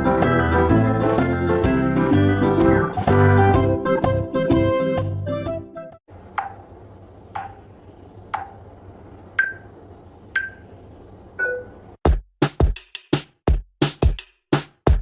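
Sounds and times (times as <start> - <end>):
faint steady hum: 6.1 - 12.0.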